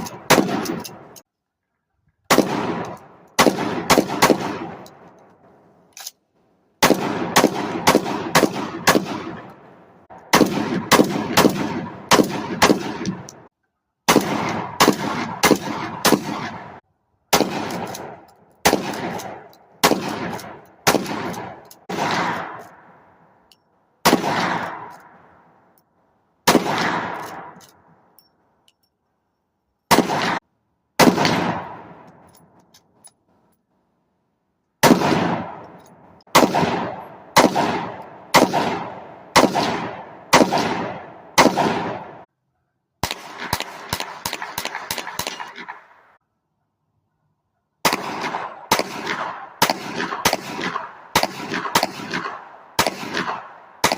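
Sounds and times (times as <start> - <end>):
gunshots with echo: 0.0 - 1.2, 2.3 - 5.0, 6.8 - 13.5, 14.1 - 23.0, 24.0 - 25.1, 26.4 - 27.6, 29.9 - 30.4, 31.0 - 32.3, 34.8 - 42.3, 43.0 - 46.0, 47.8 - 53.9.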